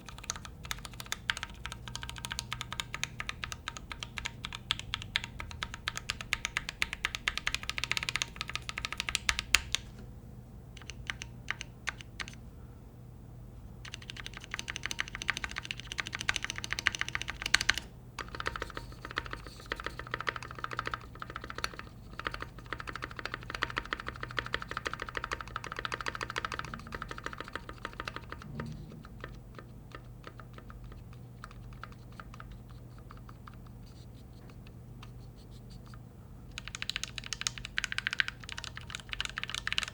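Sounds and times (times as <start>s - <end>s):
mechanical keyboard typing: 0.0s - 9.9s, 10.8s - 12.4s, 13.8s - 35.2s, 35.8s - 39.9s.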